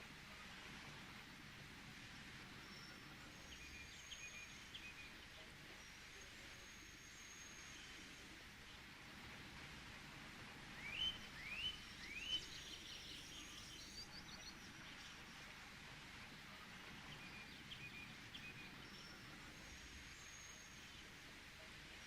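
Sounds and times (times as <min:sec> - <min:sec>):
faint outdoor hiss: 0:00.0 - 0:22.0
birds chirping: 0:16.9 - 0:19.7.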